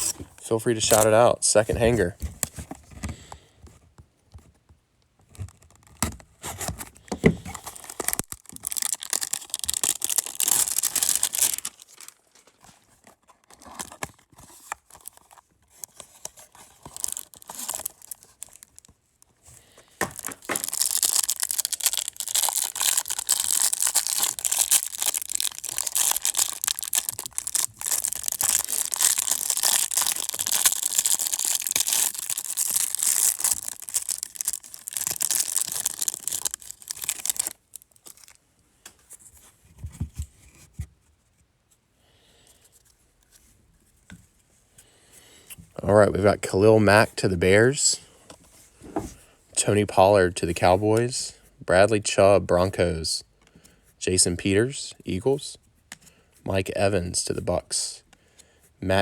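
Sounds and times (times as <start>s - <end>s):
packaging crinkling: 0.0s - 2.8s, 5.4s - 38.4s
cardboard box tearing: 16.0s - 18.6s.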